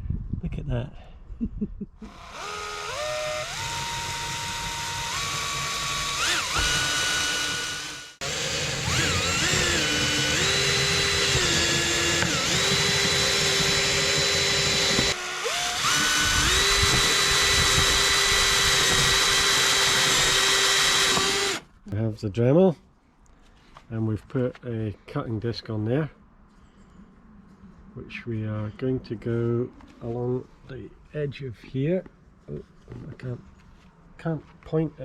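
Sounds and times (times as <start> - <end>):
power tool motor whining: 2.0 - 21.7.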